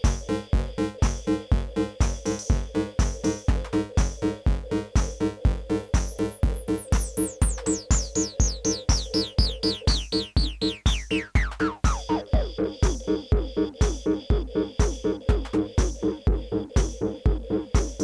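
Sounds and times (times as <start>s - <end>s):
clicky drum pattern: 0.0s - 18.0s
techno kick drum: 0.0s - 18.0s
synth note falling in pitch: 5.7s - 14.2s.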